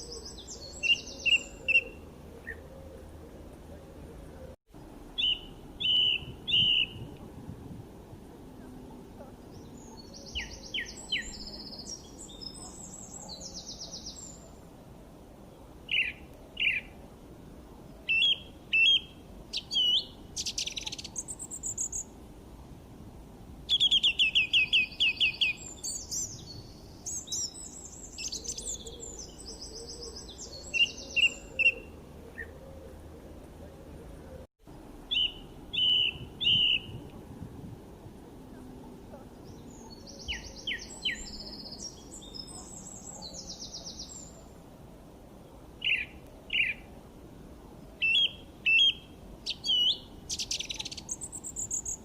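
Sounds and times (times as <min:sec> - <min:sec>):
songbirds chirping and singing: 0:00.0 - 0:04.6, 0:05.2 - 0:07.1, 0:08.5 - 0:14.6, 0:18.0 - 0:22.0, 0:23.7 - 0:33.1, 0:38.5 - 0:44.5, 0:48.0 - 0:52.0
faint steady hiss: 0:00.0 - 0:52.0.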